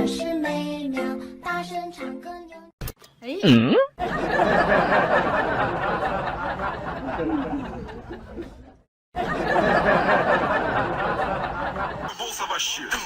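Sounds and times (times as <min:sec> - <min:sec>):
people laughing: 0:04.0 - 0:12.5.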